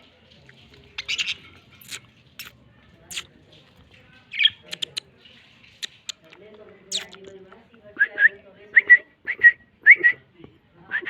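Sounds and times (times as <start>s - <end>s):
soft warbling chatter: 0.0s - 11.0s
budgerigars chirping and squawking: 1.0s - 1.5s.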